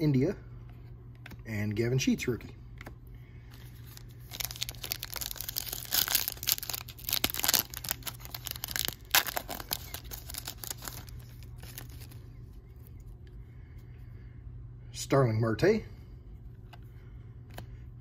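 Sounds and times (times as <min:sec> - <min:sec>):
steady low hum: 0:00.0 - 0:18.0
foil wrapper tearing and crinkling: 0:03.8 - 0:12.2.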